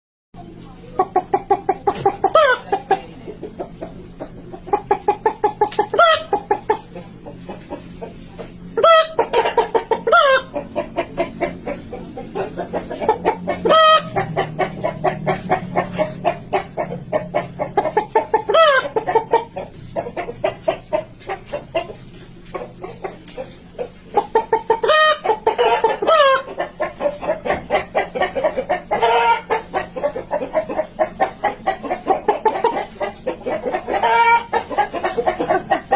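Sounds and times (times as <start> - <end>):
person imitating hen clucking: 8.7 - 22.0, 22.6 - 35.9.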